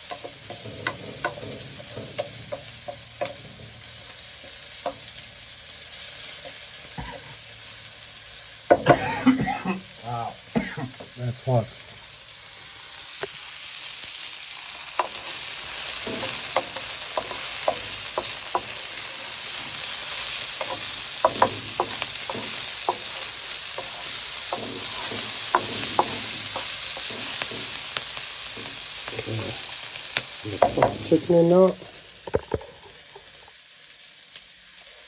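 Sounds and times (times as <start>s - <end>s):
utensil clicking against pan: 0.0s - 5.3s, 14.8s - 31.2s
onions sizzling in a pan: 0.0s - 35.0s.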